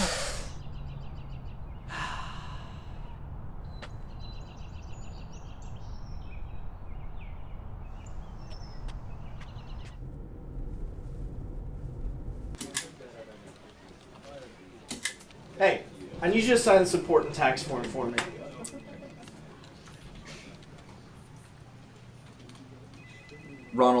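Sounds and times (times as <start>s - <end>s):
person sighing: 0.0s - 0.6s, 1.9s - 3.1s
low background hum: 0.0s - 24.0s.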